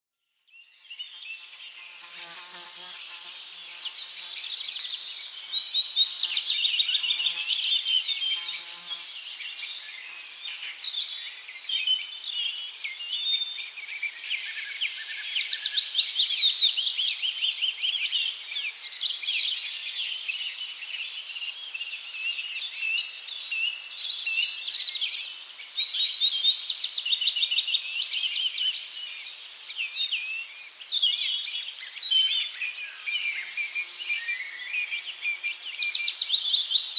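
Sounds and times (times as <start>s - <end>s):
small birds chirping and trilling: 0.5s - 36.9s.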